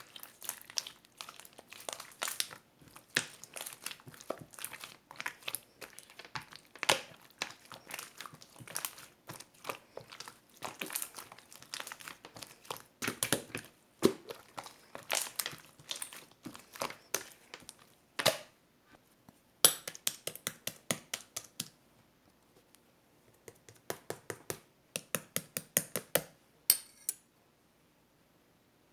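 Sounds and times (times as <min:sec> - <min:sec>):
crinkling and crackling: 0:00.0 - 0:18.0.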